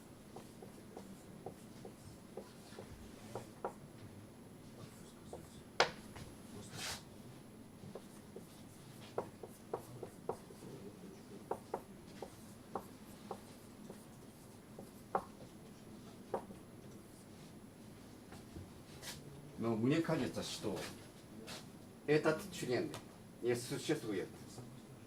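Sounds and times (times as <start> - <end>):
light taps writing on a board: 0.3 - 3.8, 5.3 - 6.3, 7.9 - 10.6, 11.4 - 17.0.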